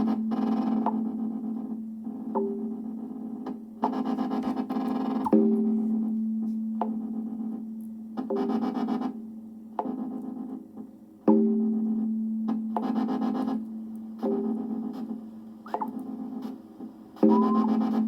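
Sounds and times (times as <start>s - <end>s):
synthesizer music: 17.2s - 18.0s.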